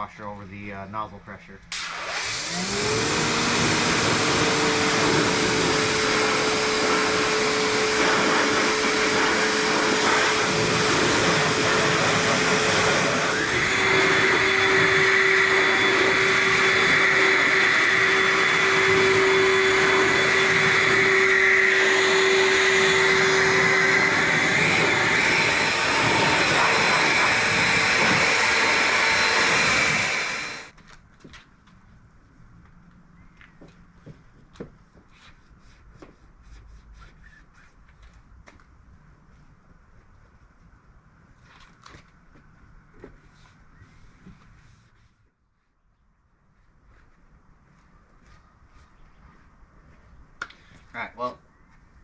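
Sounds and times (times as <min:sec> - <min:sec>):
high motor whine: 0:01.8 - 0:30.7
electric pump motor hum: 0:01.8 - 0:30.8.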